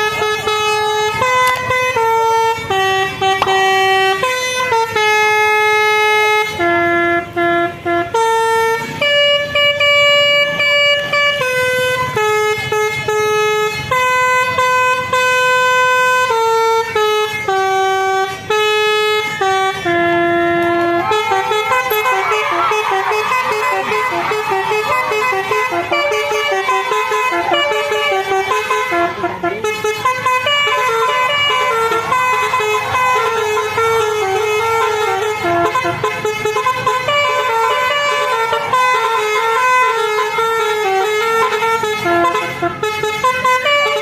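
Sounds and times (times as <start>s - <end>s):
multi-tone musical air horn: 0.0s - 44.0s.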